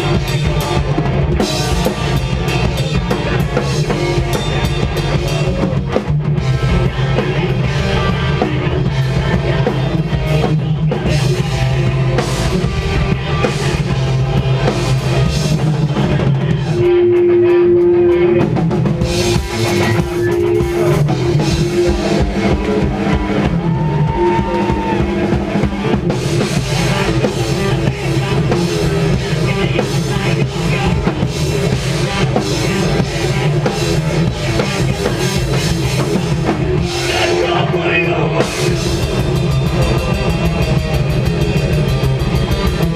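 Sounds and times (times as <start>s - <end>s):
distorted guitars and bass: 0.0s - 42.9s
drum kit: 0.0s - 42.9s.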